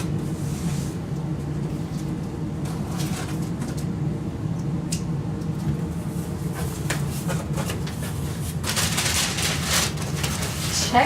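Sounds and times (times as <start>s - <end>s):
steady low hum: 0.0s - 11.0s
packaging crinkling: 7.7s - 10.9s.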